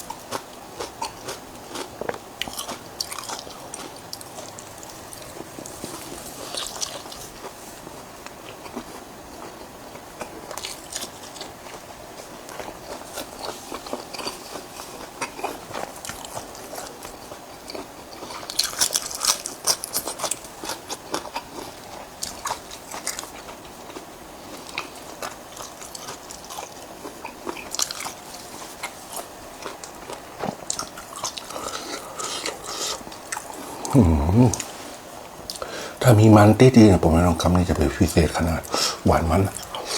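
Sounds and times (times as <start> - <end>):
person chewing crunchy food: 0.0 - 36.0, 37.1 - 39.9.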